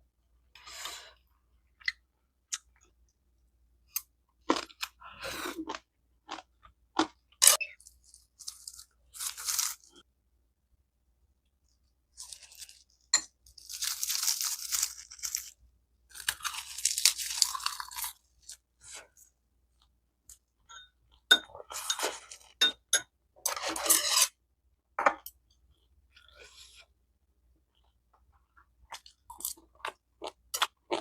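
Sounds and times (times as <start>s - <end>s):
crunchy chewing: 13.6s - 19.3s.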